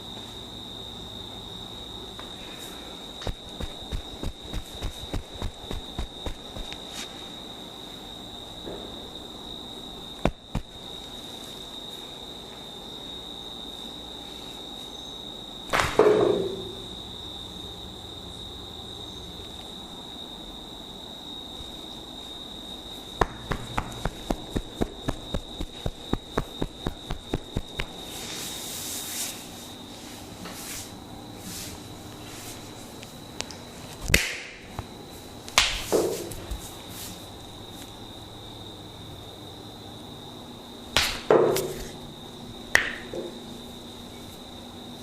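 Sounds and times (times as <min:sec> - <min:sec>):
steady high-pitched whine: 0:00.0 - 0:45.0
rubbing hiss: 0:02.4 - 0:07.2, 0:23.5 - 0:32.8
sharp snapping clicks: 0:33.4 - 0:34.6, 0:41.0 - 0:41.3.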